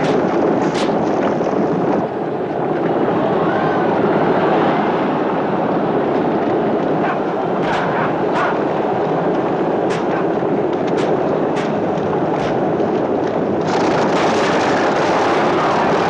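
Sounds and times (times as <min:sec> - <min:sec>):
rumbling chariot wheels: 0:00.0 - 0:03.3, 0:05.2 - 0:16.0
horses galloping: 0:05.8 - 0:16.0.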